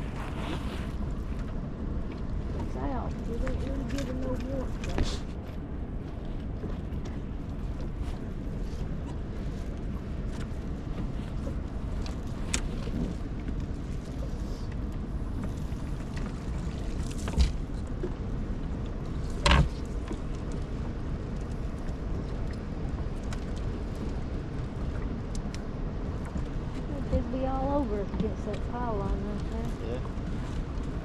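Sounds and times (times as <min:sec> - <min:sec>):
water around a boat: 0:00.0 - 0:31.0
wind: 0:00.0 - 0:31.0.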